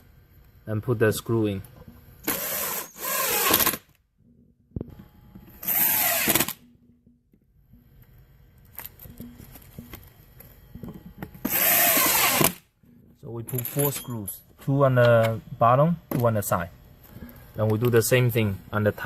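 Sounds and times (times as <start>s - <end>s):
cordless drill driving screws: 2.2s - 3.8s, 5.6s - 6.6s, 11.5s - 12.6s.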